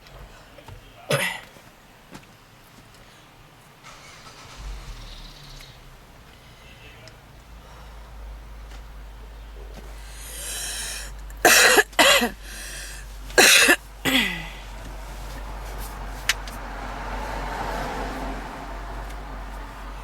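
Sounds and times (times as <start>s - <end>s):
woman coughing harshly: 1.1s - 1.5s, 10.2s - 14.6s
quiet breathing: 2.9s - 3.6s, 4.6s - 11.4s, 12.2s - 15.9s
low car cabin hum: 3.4s - 20.0s
wheezing breath: 9.8s - 11.4s, 12.2s - 13.2s, 14.1s - 14.8s.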